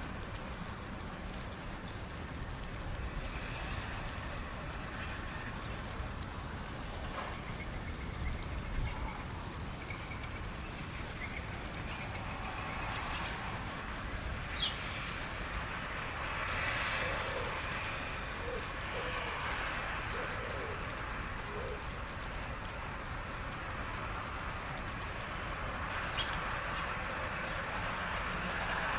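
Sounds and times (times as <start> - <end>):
outdoor hiss and low rumble: 0.0 - 28.9.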